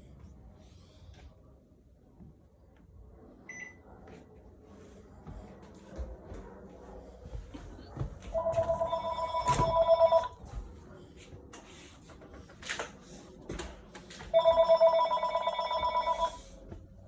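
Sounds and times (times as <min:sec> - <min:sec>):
telephone ringing: 0:08.4 - 0:10.4, 0:14.3 - 0:16.5.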